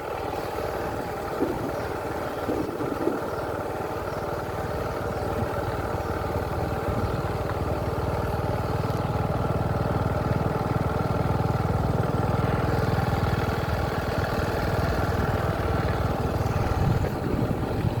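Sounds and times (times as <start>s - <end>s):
engine running with low rumble: 0.0s - 18.0s.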